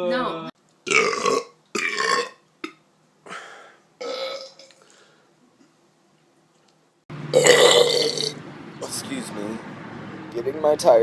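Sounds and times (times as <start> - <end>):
person burping: 0.9 - 2.8, 4.0 - 4.7, 7.3 - 8.3.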